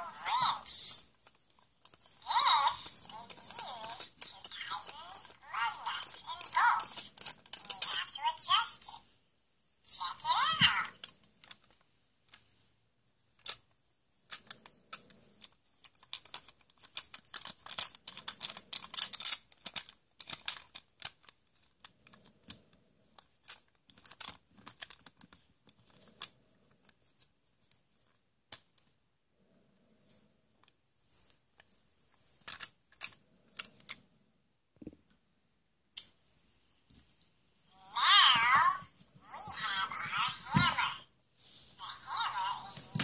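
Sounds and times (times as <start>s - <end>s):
plastic toy tools rattling: 0.2s - 8.6s, 13.3s - 28.9s, 30.6s - 34.0s, 38.0s - 41.0s, 41.8s - 43.0s.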